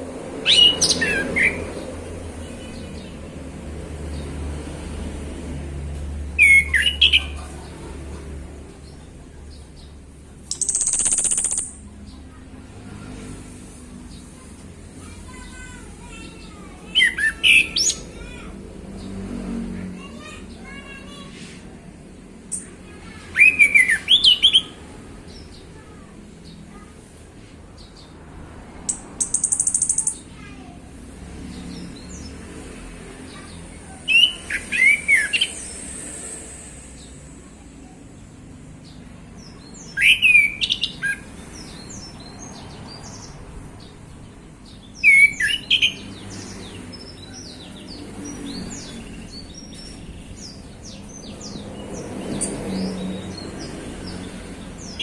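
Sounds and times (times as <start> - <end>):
bird whistled song: 34.1 - 35.6, 39.7 - 41.2, 45.0 - 46.0.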